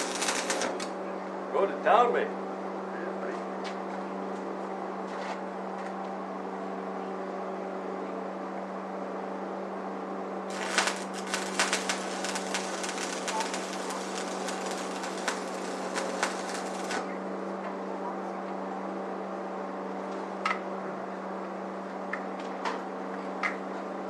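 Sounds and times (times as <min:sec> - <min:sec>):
welder humming: 0:00.0 - 0:00.9, 0:10.5 - 0:17.2
welding arc crackling and popping: 0:00.0 - 0:00.9, 0:10.5 - 0:17.2.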